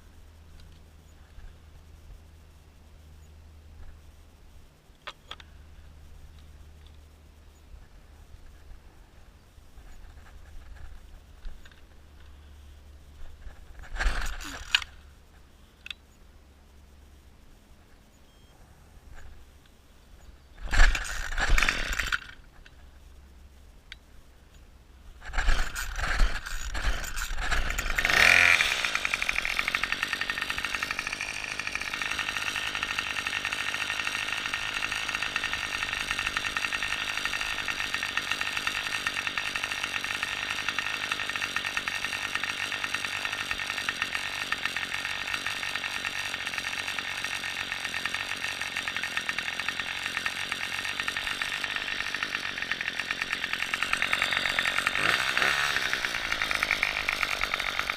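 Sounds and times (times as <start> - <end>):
string trimmer engine running: 13.4 - 15.0, 20.6 - 22.4, 25.2 - 57.9
string trimmer pull-start: 13.8 - 15.0, 20.6 - 22.4, 25.2 - 57.9.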